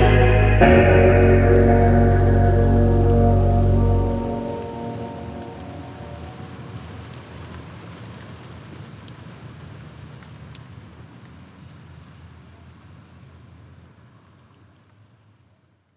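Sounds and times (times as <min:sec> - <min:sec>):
low rumble: 0:00.0 - 0:06.9
steady rain: 0:00.0 - 0:15.3.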